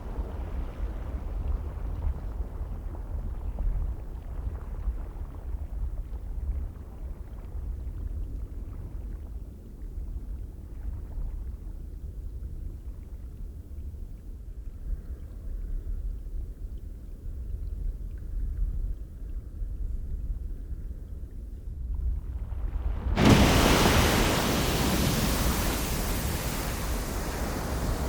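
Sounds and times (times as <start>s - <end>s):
wind rumble on microphone: 0.0s - 28.0s
geyser rushing noise: 22.0s - 28.0s.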